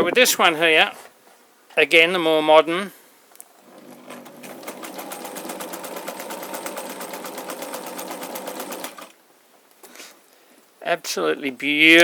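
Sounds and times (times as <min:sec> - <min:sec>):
sewing machine stitching: 0:03.6 - 0:09.2.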